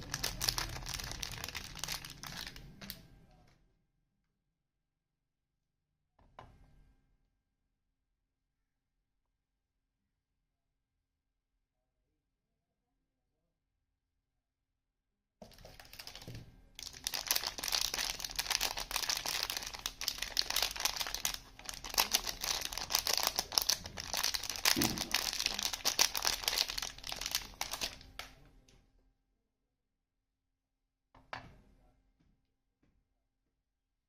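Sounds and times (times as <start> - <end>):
wrapper crinkling: 0.0 - 3.0, 15.5 - 28.2.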